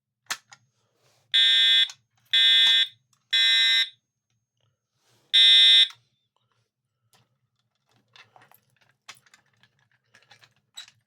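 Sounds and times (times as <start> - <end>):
fire alarm horn blasts: 1.4 - 4.0, 5.4 - 6.0.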